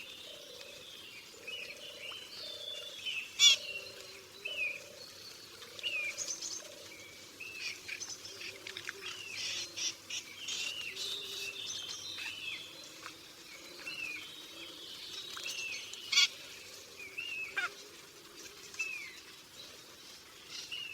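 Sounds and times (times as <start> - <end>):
birds chirping and twittering: 0.0 - 20.9.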